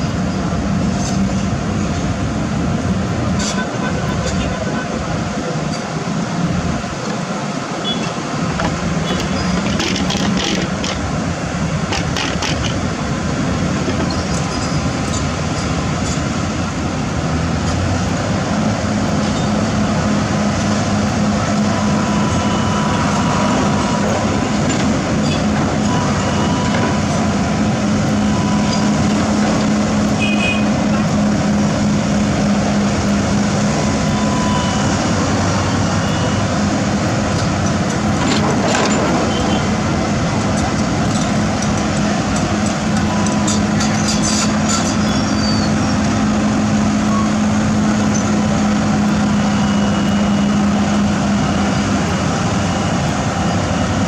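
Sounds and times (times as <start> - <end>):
diesel engine running: 0.0 - 54.0
faint high whine: 49.1 - 54.0.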